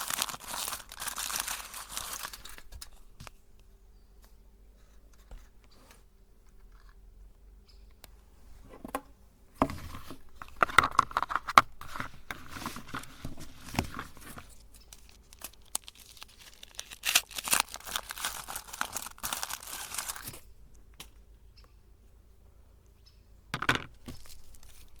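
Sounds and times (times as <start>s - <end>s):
wrapper tearing and crinkling: 0.0s - 3.0s, 10.4s - 20.4s, 24.1s - 25.0s.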